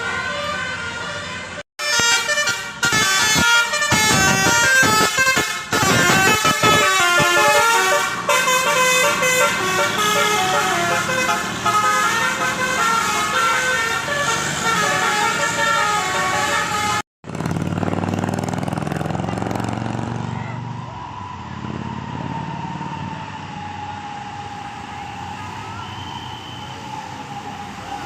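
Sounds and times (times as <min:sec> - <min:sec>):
multi-trumpet air horn tune: 0:00.3 - 0:17.0.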